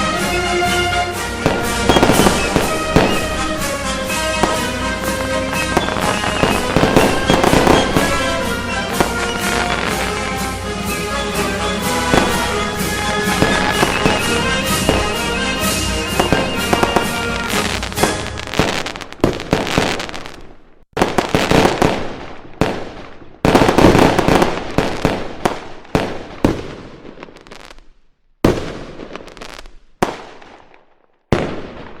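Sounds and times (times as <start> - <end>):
background music: 0.0 - 19.1
firework bangs: 0.0 - 27.8, 28.4 - 32.0
firework crackle: 0.0 - 32.0.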